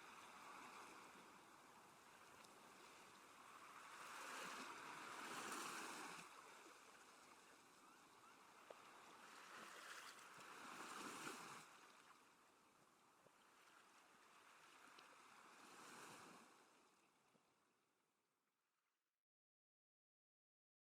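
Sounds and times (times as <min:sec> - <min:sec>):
faint ocean waves on shore: 0:00.0 - 0:17.7.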